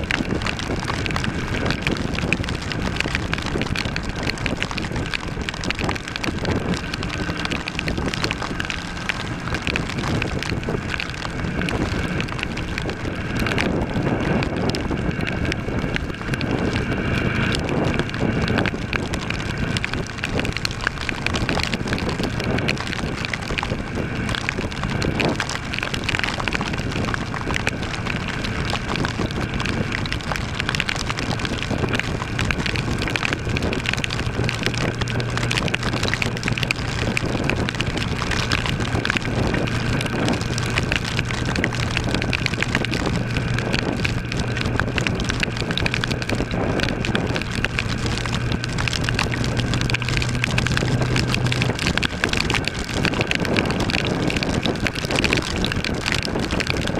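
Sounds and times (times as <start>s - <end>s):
rain hitting microphone: 0.0s - 56.9s
rushing wind: 0.0s - 56.9s.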